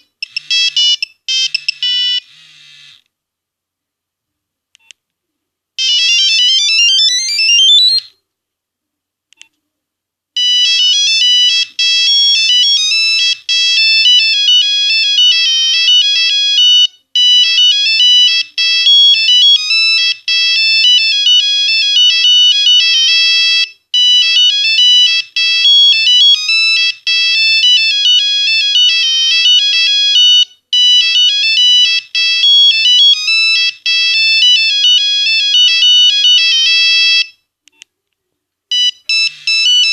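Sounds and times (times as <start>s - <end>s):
monophonic ringtone melody: 5.8s - 8.1s, 10.4s - 37.4s, 38.7s - 39.9s
faint click: 9.3s - 9.6s.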